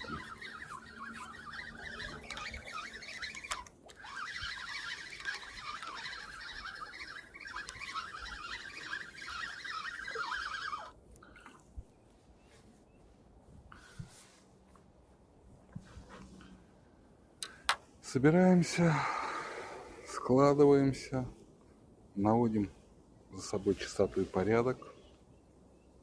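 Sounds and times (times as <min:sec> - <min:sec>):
chorus of animal chirps: 0:00.0 - 0:13.1.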